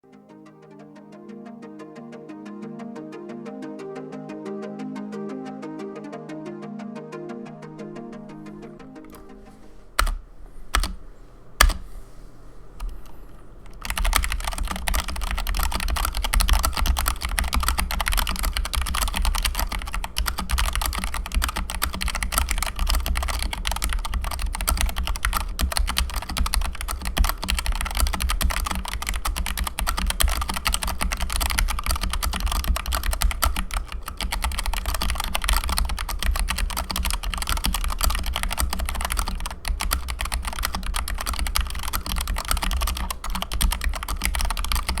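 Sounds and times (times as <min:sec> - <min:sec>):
mechanical keyboard typing: 0:08.5 - 0:11.0, 0:11.6 - 0:11.9, 0:12.8 - 0:45.0.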